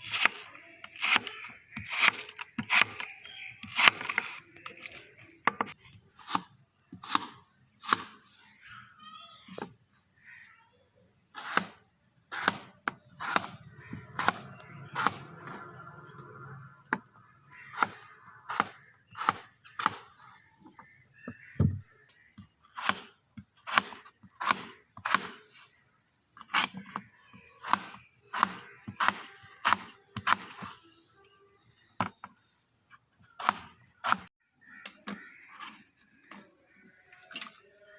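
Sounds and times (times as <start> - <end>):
knife chopping on wooden board: 5.5 - 8.2, 11.4 - 15.3, 22.8 - 25.4, 27.6 - 30.7, 33.4 - 34.3.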